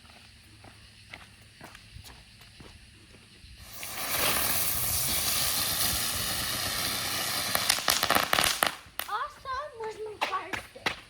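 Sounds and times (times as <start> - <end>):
firework crackles: 0.9 - 11.0
firework hissing rush: 2.3 - 9.1.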